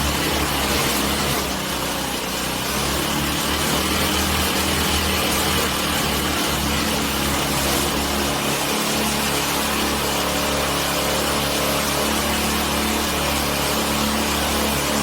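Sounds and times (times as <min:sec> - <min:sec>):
small engine running: 0:00.0 - 0:15.0.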